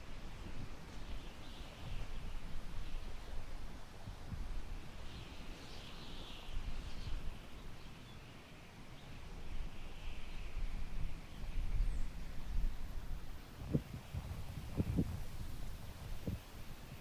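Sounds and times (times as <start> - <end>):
wind on microphone rumble: 10.5 - 17.0.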